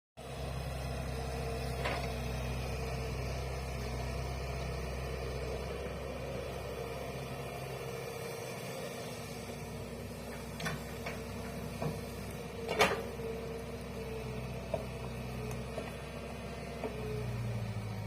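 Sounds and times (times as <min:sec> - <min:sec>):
excavator diesel engine running: 0:00.2 - 0:18.0
machine knocks and clanks: 0:12.7 - 0:13.1.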